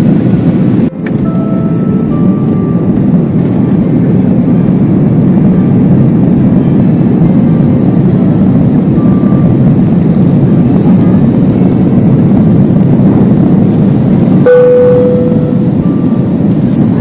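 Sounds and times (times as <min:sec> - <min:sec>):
airliner cabin engine and airflow rush: 0:00.0 - 0:17.0
single steady tone: 0:00.9 - 0:03.0, 0:14.4 - 0:16.4.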